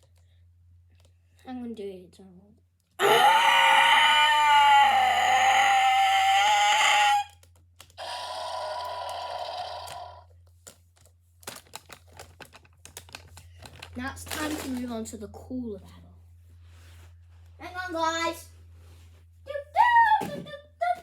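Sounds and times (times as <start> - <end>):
child roaring like dinosaur: 3.0 - 7.3, 8.0 - 10.2
plastic toys clacking together: 7.4 - 15.0.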